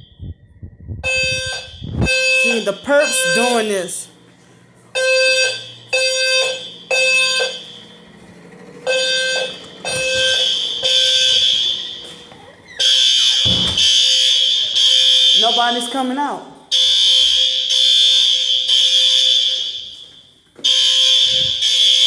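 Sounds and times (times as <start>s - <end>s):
fire alarm horns: 1.0s - 22.0s.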